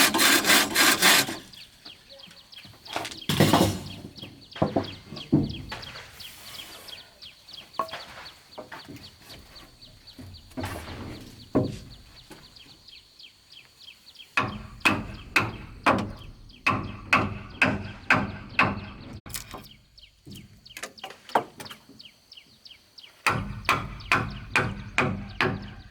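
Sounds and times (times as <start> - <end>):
birds chirping: 0.0 - 25.9
tool strikes on wood: 14.4 - 19.7, 23.2 - 25.9.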